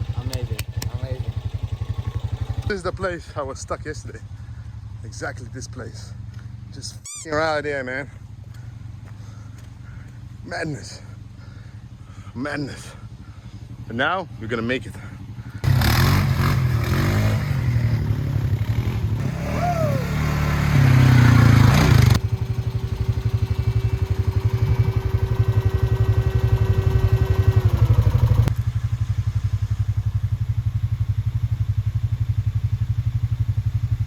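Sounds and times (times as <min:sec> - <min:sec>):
vehicle engine labouring: 0:07.1 - 0:31.5
held whine: 0:15.7 - 0:30.6.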